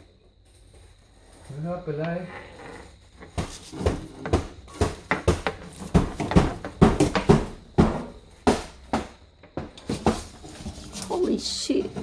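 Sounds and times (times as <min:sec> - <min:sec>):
knocks thumps and clatters: 0:03.2 - 0:11.0.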